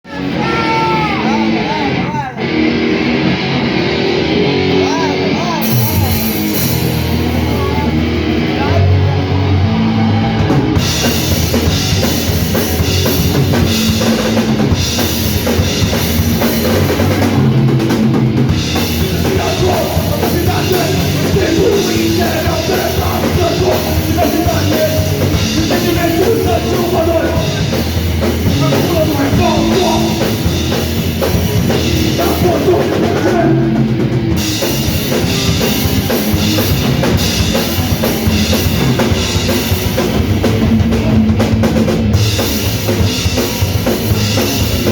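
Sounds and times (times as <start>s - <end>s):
punk band playing live: 0.0s - 44.9s
cymbals: 5.6s - 8.2s
heavy bass drum: 5.6s - 8.8s, 9.8s - 44.9s.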